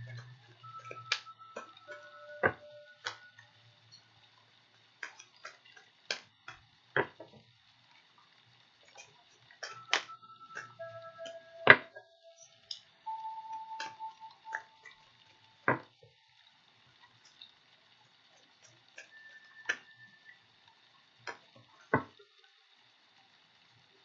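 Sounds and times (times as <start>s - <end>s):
ringing note: 0.0s - 4.1s, 9.6s - 16.3s
sharp taps and clicks: 5.0s - 7.4s.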